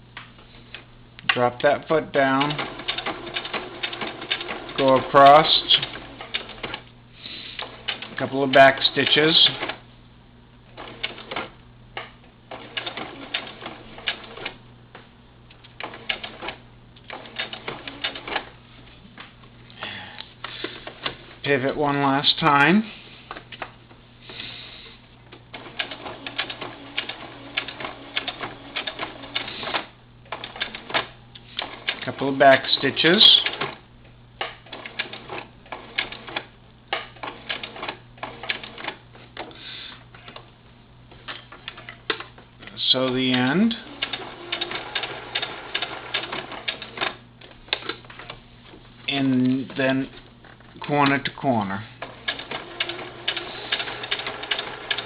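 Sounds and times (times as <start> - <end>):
sewing machine stitching: 2.2 - 6.8, 12.5 - 14.6, 15.8 - 18.5, 25.5 - 32.1, 34.6 - 39.6, 43.3 - 48.4, 52.0 - 55.0.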